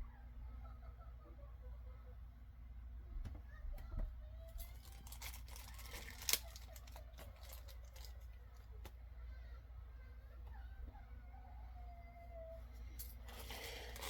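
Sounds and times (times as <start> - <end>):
packaging crinkling and tearing: 4.6 - 8.4, 13.3 - 14.0.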